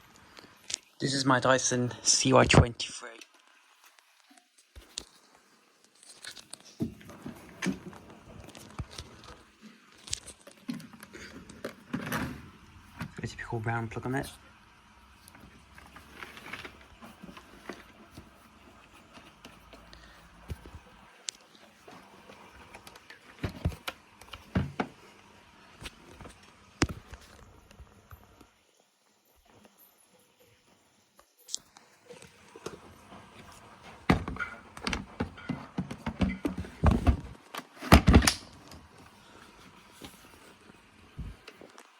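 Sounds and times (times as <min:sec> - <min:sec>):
rustling: 0:15.1 - 0:25.1
vacuum cleaner handling clicks and knocks: 0:34.1 - 0:38.8
vacuum cleaner handling clicks: 0:37.5 - 0:38.8.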